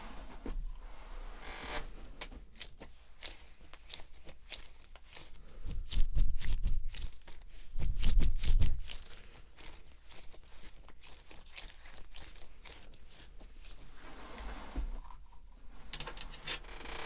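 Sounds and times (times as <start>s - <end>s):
close crinkling and crackling: 1.7s - 17.0s.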